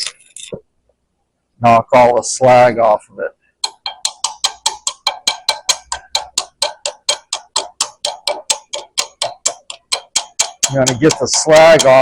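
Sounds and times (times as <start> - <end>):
chipping hammer striking metal: 3.6 - 12.0.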